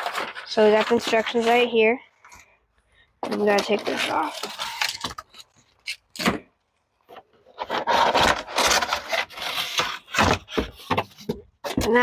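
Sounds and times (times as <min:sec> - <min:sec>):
packaging scraping and rubbing: 0:00.0 - 0:01.8, 0:03.2 - 0:06.2, 0:07.5 - 0:11.3.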